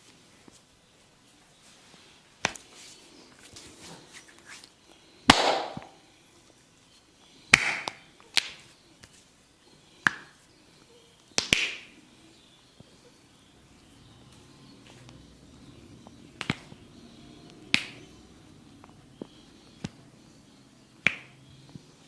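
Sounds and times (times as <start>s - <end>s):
hands rubbing hair: 0.0s - 4.8s
hands slapping head: 2.4s - 2.7s, 5.3s - 6.0s, 7.5s - 9.2s, 10.0s - 10.4s, 11.4s - 12.0s, 16.4s - 16.8s, 17.7s - 18.0s, 21.0s - 21.8s.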